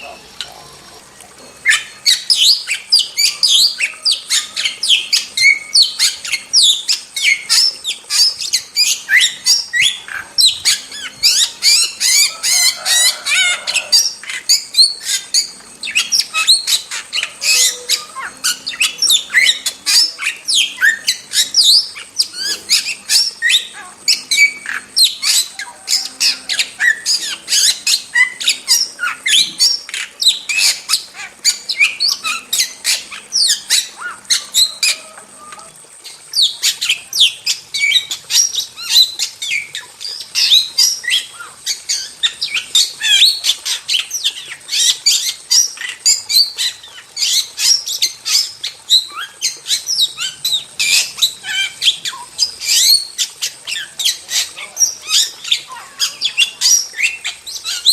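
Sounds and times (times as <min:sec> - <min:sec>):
starling chattering calls: 0:00.0 - 0:37.2.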